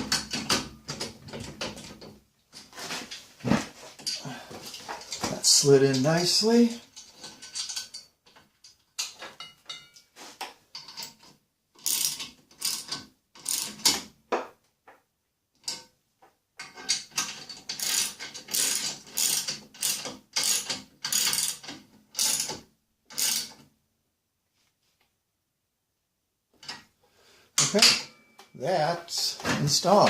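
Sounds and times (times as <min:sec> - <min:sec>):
ratchet wrench clicking: 0:17.8 - 0:22.5.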